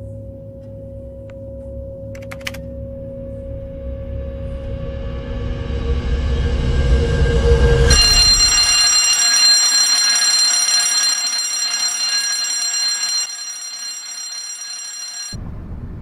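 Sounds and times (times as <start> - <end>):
high-pitched alarm tone: 7.8 - 15.4.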